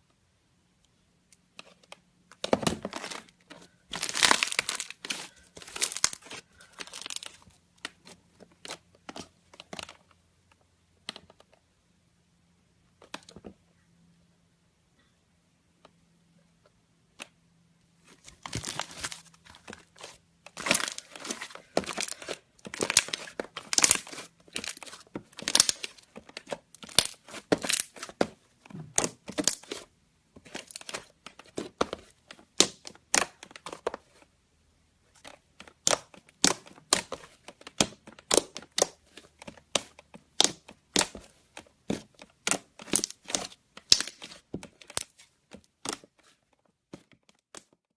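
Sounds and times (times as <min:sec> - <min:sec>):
slime crackling and popping: 0:03.9 - 0:07.4, 0:20.5 - 0:28.0, 0:35.8 - 0:39.0, 0:39.7 - 0:41.2, 0:42.4 - 0:45.1.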